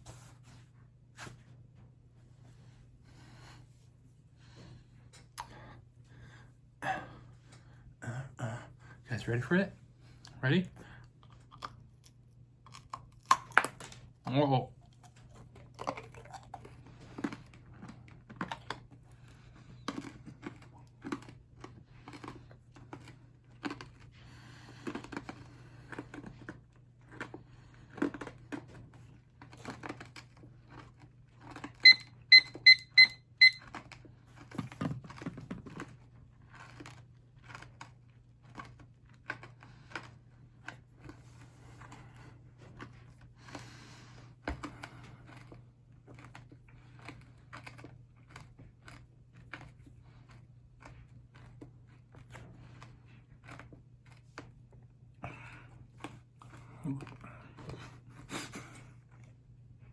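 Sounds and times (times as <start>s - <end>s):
short high beeps: 31.8s - 33.6s.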